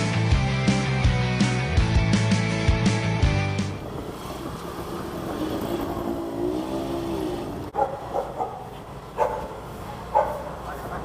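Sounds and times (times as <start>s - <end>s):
music: 0.0s - 3.8s
outdoor traffic noise: 0.0s - 11.0s
motor vehicle passing: 2.9s - 11.0s.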